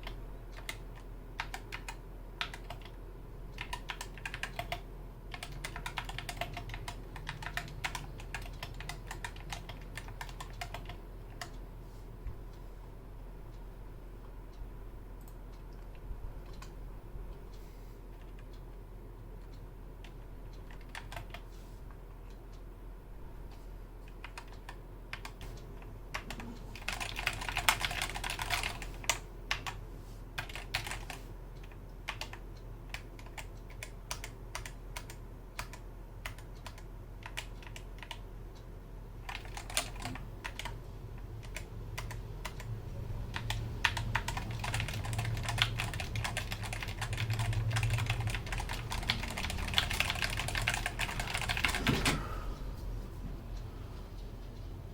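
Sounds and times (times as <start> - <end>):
keyboard typing: 0.0 - 11.6, 19.4 - 21.6, 24.0 - 29.8, 30.4 - 38.2, 39.2 - 52.6.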